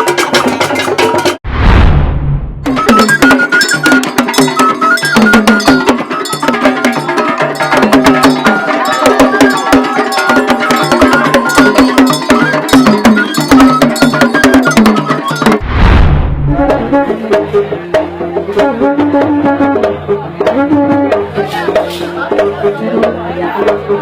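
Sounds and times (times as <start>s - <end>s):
drums in fast rhythm: 0.0s - 1.4s, 2.6s - 15.6s, 16.5s - 24.0s
high-pitched struck percussion: 2.6s - 15.6s.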